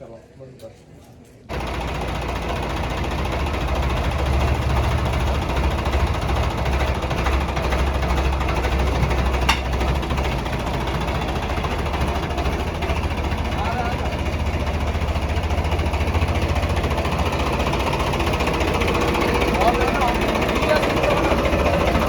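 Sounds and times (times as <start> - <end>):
tractor diesel engine running: 1.5 - 22.0.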